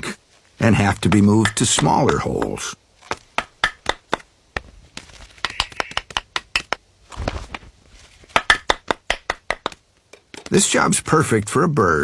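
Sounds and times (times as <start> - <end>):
woodpecker tapping on wood: 0.9 - 4.7, 5.4 - 6.9.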